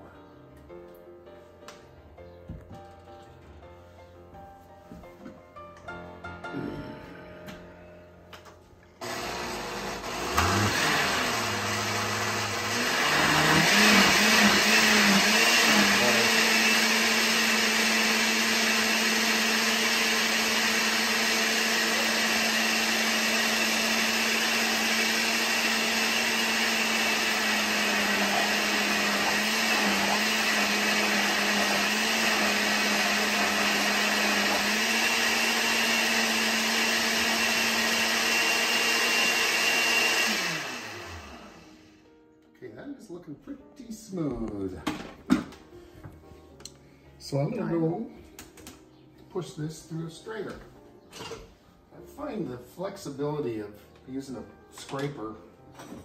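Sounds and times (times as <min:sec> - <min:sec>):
blender motor running: 0:09.0 - 0:41.9.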